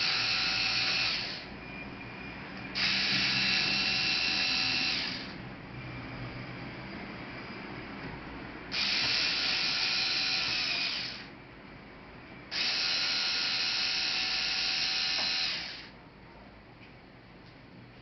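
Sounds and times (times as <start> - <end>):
electric screwdriver whining: 0.0 - 1.5, 2.8 - 5.4, 8.7 - 11.3, 12.5 - 15.9.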